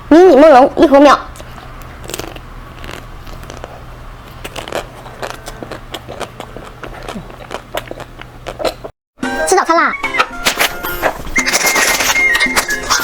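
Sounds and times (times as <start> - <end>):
chewing and crunching: 1.4 - 8.9, 10.5 - 13.0.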